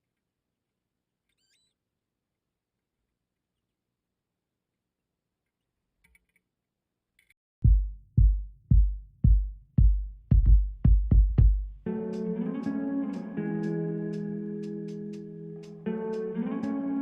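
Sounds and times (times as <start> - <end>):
electronic bass drum booming: 7.6 - 11.8.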